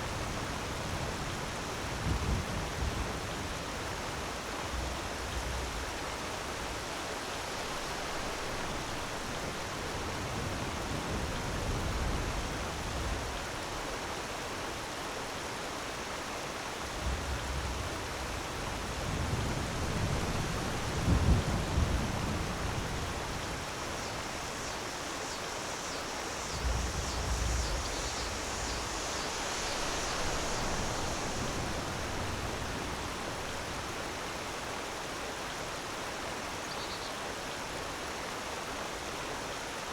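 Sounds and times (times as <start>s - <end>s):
waterfall rushing: 23.0s - 39.9s
deep rumbling surges: 26.2s - 34.0s.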